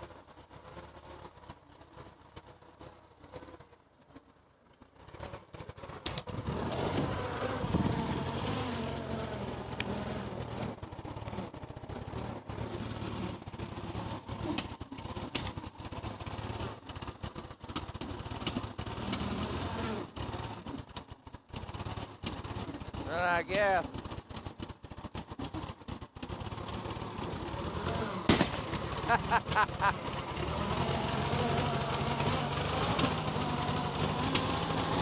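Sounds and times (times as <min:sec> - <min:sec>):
engine running unevenly: 0:05.0 - 0:35.0
engine backfiring pops: 0:27.8 - 0:35.0.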